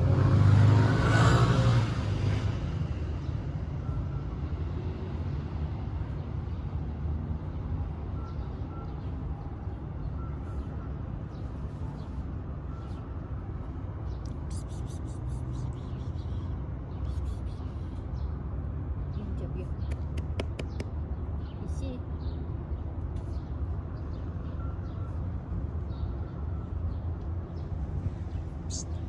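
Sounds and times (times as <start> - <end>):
vehicle passing by: 0.0 - 3.5, 27.7 - 29.0
street traffic rumble: 0.0 - 29.0.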